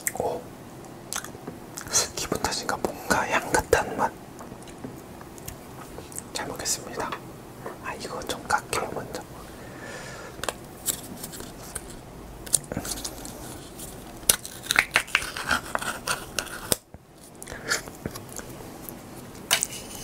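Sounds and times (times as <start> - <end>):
clicks and snips of ham cutting: 12.5 - 16.8.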